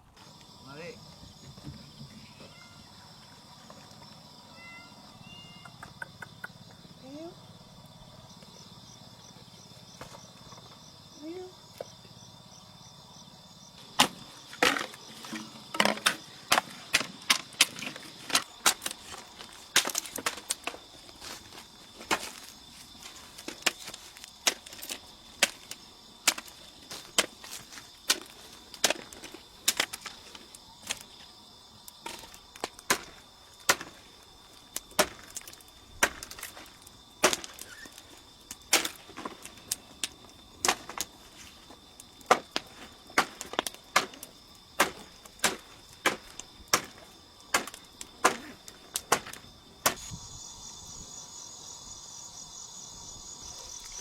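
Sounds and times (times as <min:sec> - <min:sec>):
insects droning: 0:00.0 - 0:54.0
blade chopping wood: 0:14.0 - 0:20.8, 0:32.0 - 0:34.0, 0:34.8 - 0:37.8, 0:38.7 - 0:39.4, 0:40.6 - 0:41.1, 0:42.2 - 0:50.1.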